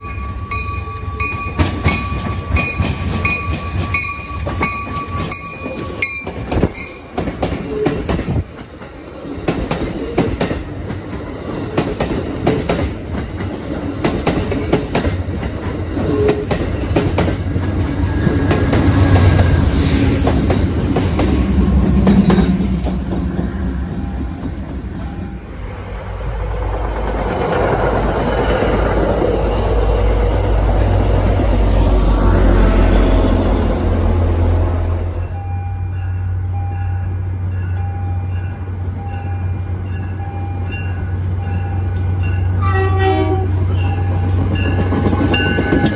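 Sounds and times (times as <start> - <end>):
train low rumble: 0.0 - 45.9
train wheels clicking on rail joints: 0.5 - 33.0, 43.6 - 45.9.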